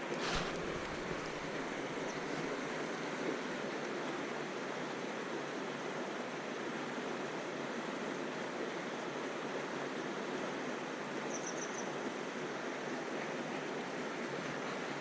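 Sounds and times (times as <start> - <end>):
water rushing over rocks: 0.0 - 4.4.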